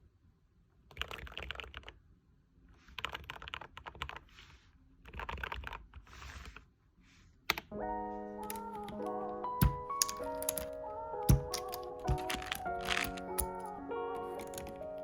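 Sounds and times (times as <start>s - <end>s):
fast typing on mechanical keyboard: 0.9s - 2.0s, 2.9s - 4.2s, 5.1s - 6.1s, 9.6s - 15.0s.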